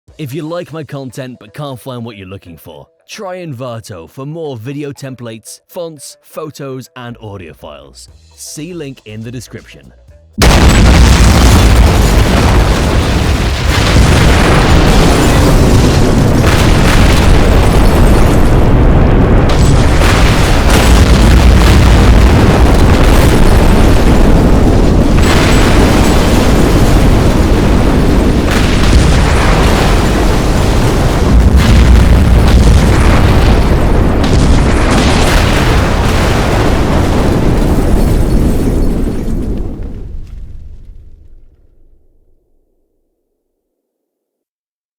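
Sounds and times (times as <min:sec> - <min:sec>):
bomb explosions: 0:10.4 - 0:42.0.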